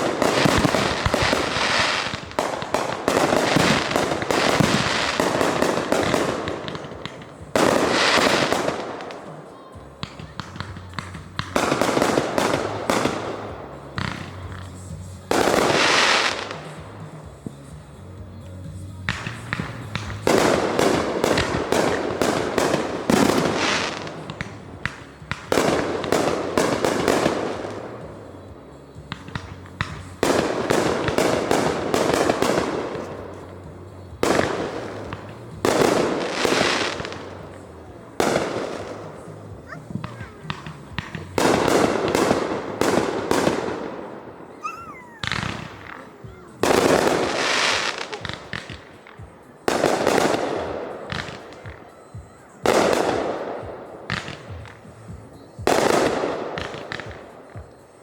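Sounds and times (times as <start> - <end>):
firework whistling: 0.0 - 9.2, 18.5 - 50.6
fireworks bangs: 0.0 - 57.9
fireworks crackles: 0.0 - 58.0.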